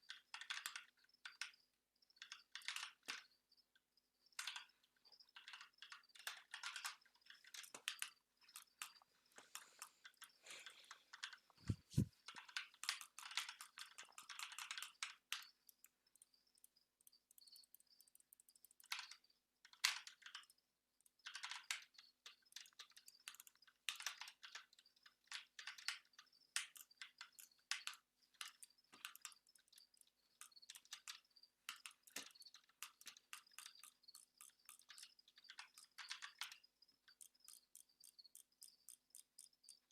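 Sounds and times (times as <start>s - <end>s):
mouse clicks: 27.4s - 39.9s.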